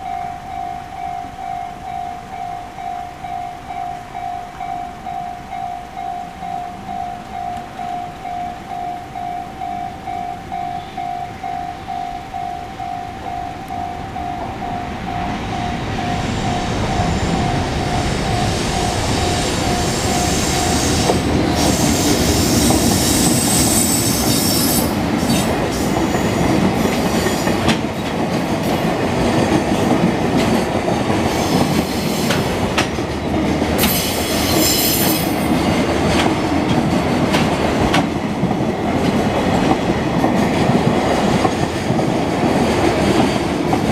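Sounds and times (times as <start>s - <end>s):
electronic level-crossing bell: 0.0s - 21.1s
train rumble: 0.0s - 43.9s
train wheels clattering over rail joints: 19.8s - 43.9s.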